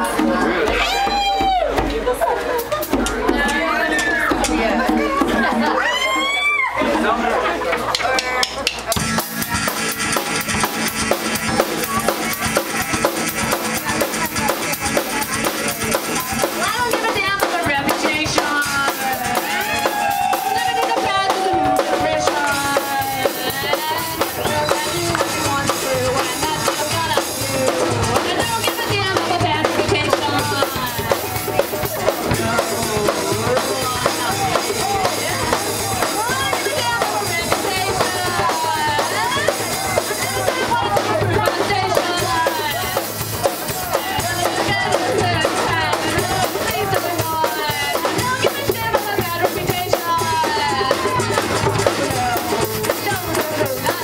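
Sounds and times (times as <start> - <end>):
band playing punk rock: 0.0 - 54.0
drum kit beat: 0.0 - 54.0.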